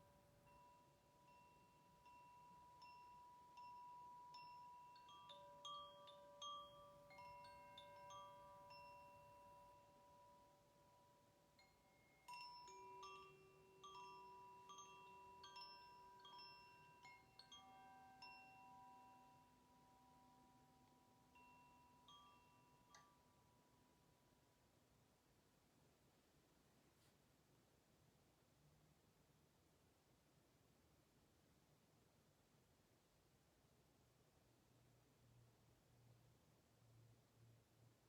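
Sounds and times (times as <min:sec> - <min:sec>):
faint metal chimes: 0:00.0 - 0:24.3.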